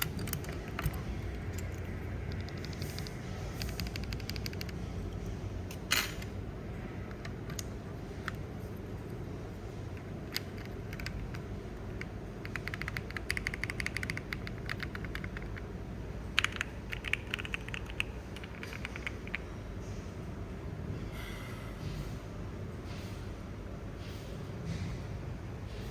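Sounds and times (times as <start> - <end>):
mechanical keyboard typing: 0.0 - 4.8, 9.9 - 19.5
steady low hum: 0.0 - 25.9.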